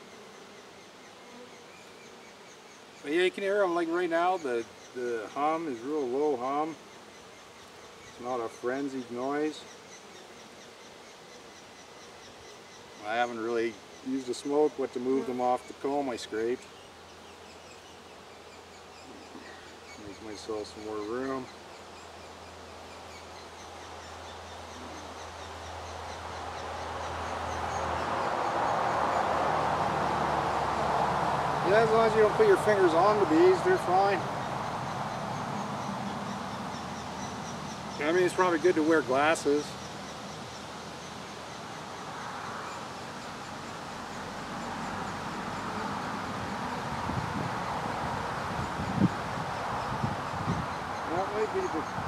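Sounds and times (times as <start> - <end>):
bee colony humming: 0.0 - 52.0
outdoor hiss: 0.0 - 52.0
bird chirping: 31.7 - 46.1.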